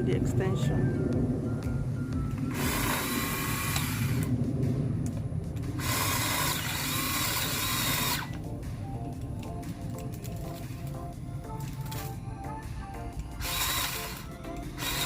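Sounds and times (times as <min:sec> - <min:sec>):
electric chainsaw whining: 0:02.5 - 0:04.3, 0:05.8 - 0:08.4, 0:13.4 - 0:15.0.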